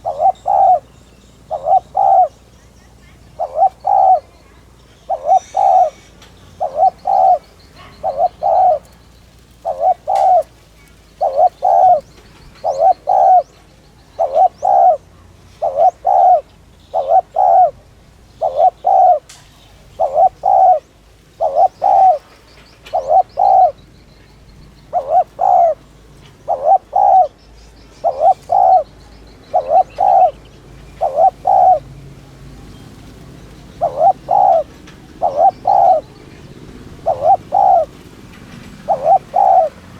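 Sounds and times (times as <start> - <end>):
dove cooing: 0.0 - 27.4, 28.0 - 39.9.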